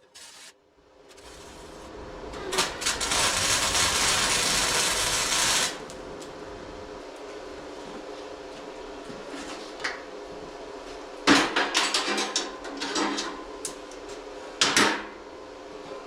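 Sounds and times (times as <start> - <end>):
steady low noise: 0.6 - 8.9.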